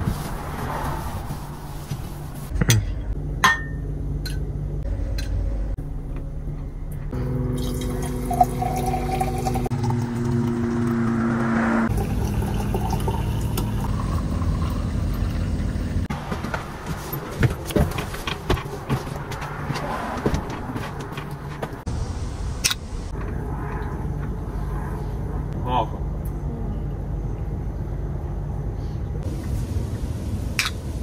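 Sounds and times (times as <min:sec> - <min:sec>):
steady low hum: 0:02.3 - 0:16.1, 0:21.6 - 0:31.0
liquid pouring into container: 0:07.6 - 0:10.4, 0:11.9 - 0:15.4.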